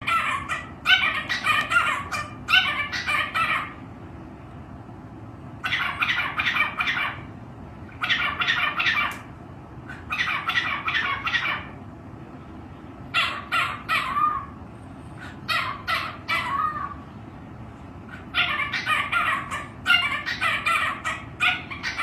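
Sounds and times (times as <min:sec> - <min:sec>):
parrot squawking: 0:00.0 - 0:03.8, 0:05.6 - 0:11.8, 0:13.1 - 0:14.6, 0:15.2 - 0:17.1, 0:18.1 - 0:22.0.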